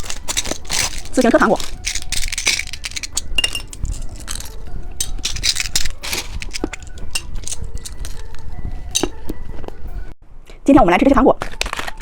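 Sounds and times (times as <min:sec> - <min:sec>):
plastic toys clicking and rattling: 0:00.0 - 0:09.3, 0:11.4 - 0:12.0
packaging being handled: 0:00.0 - 0:09.4.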